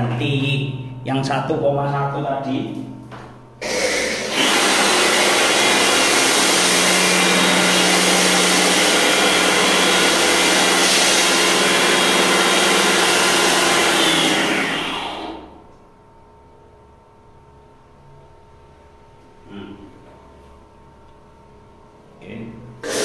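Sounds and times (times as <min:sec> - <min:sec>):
pressure washer motor hum: 0:03.6 - 0:15.6.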